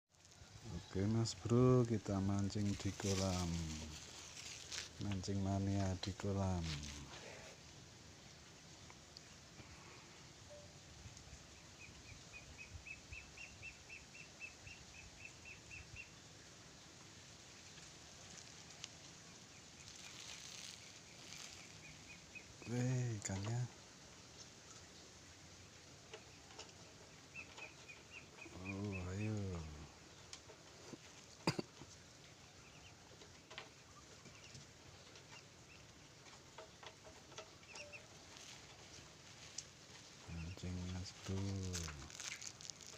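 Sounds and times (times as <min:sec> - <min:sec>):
faint bird chirps: 0:08.8 - 0:16.3, 0:19.5 - 0:23.7, 0:24.3 - 0:30.3, 0:33.8 - 0:39.6.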